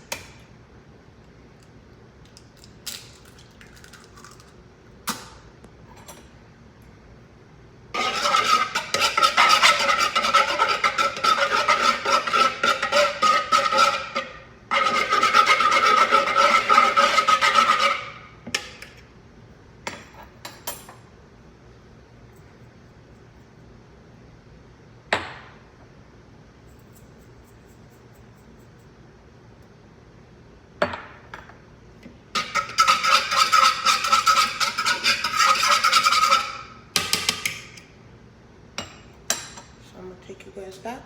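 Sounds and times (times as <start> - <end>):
whisk beating eggs in a bowl: 8.0 - 18.0, 32.4 - 36.6.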